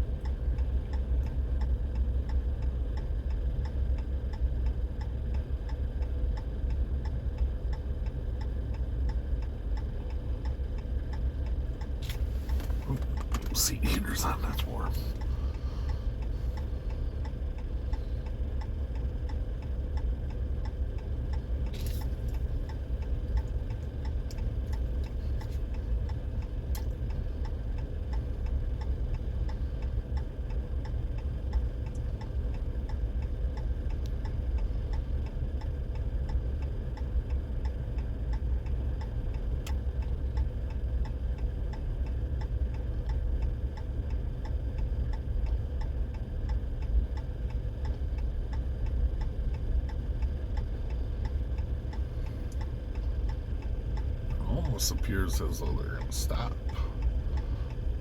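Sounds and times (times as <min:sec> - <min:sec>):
hazard flasher relay ticking: 0:00.1 - 0:58.0
low rumble: 0:37.2 - 0:58.0.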